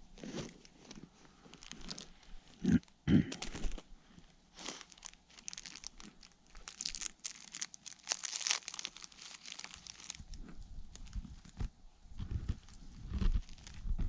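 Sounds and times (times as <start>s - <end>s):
footsteps in snow and leaves: 4.6s - 10.3s.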